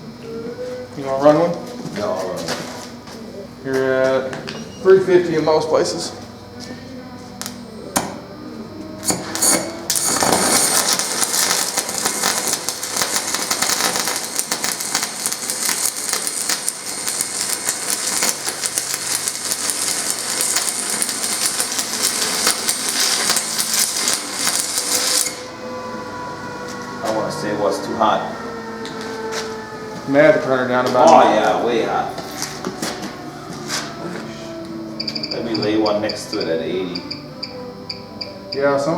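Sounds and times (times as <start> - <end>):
welding arc strikes: 9.0 - 25.5
welding arc crackling and sizzling: 9.0 - 25.7.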